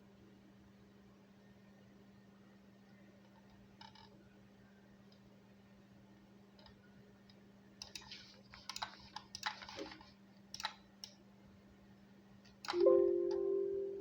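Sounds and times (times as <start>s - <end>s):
low steady hum: 12.7s - 14.0s.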